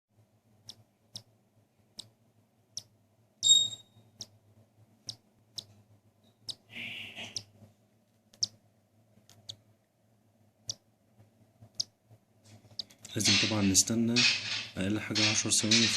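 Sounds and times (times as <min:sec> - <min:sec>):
bird chick peeping: 0:02.8 - 0:04.3, 0:05.0 - 0:07.6, 0:08.3 - 0:08.6, 0:12.7 - 0:13.1
bird chirp: 0:03.4 - 0:04.0.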